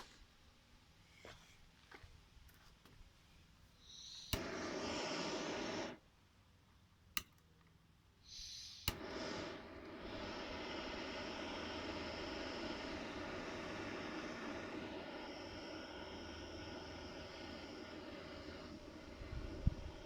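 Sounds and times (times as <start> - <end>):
vacuum pump humming: 4.1 - 6.0, 8.8 - 20.0
vacuum pump click: 4.3 - 4.7, 8.8 - 14.2.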